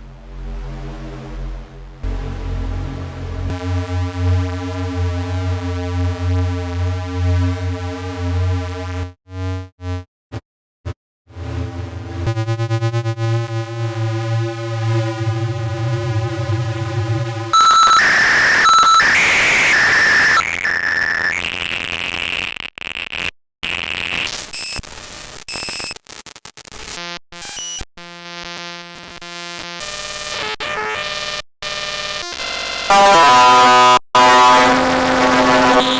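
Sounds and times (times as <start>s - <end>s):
buzzy low synthesizer drone: 0.0s - 10.0s, 11.3s - 21.3s, 31.8s - 35.9s
buzzing pitched tone: 12.3s - 21.4s, 32.6s - 35.9s
harsh noise with piercing tones: 17.2s - 21.6s, 32.5s - 35.9s.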